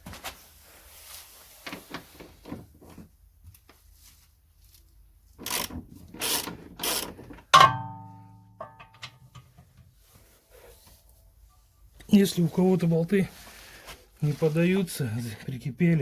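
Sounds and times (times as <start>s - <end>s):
ratchet wrench ratcheting: 5.4s - 7.2s
ringing metal clang: 7.6s - 9.3s.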